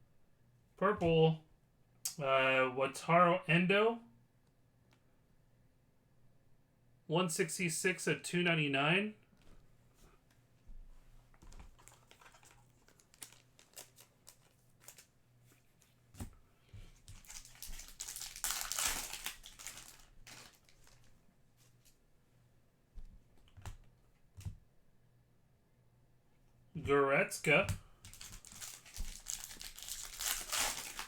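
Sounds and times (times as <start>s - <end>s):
cards being handled: 11.4s - 22.0s
card pack wrapper crinkling: 11.6s - 15.1s, 17.1s - 21.1s, 28.0s - 31.0s.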